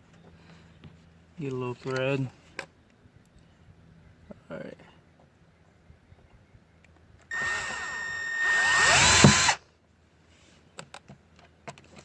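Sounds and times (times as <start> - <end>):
power drill driving screw: 7.3 - 9.6.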